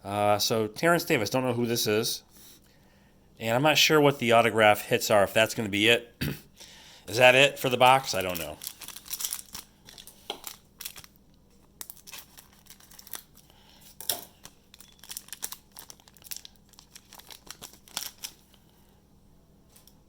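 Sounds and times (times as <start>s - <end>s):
plastic wrapping crinkling and tearing: 7.2s - 18.6s.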